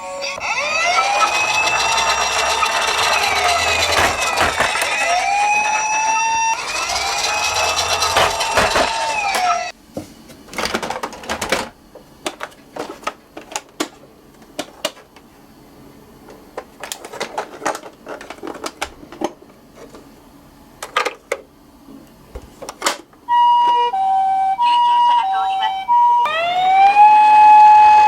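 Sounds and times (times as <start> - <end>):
toy electronic siren: 0.0 - 9.7, 23.3 - 28.0
toy cars clacking together: 0.3 - 9.7.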